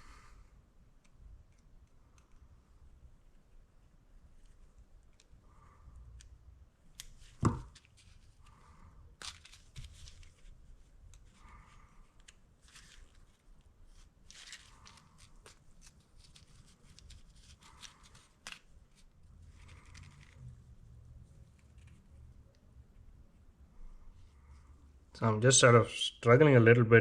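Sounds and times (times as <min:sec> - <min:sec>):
light clicks and scrapes: 0:07.0 - 0:22.6.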